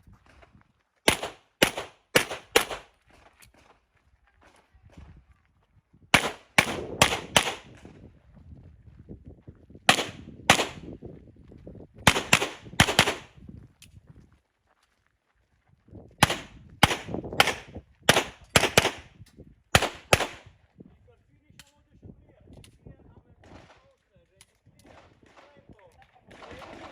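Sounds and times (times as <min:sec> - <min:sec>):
handgun shots with echo: 0:01.1 - 0:02.9, 0:06.2 - 0:07.8, 0:09.9 - 0:10.8, 0:12.1 - 0:13.3, 0:16.2 - 0:19.1, 0:19.8 - 0:20.4.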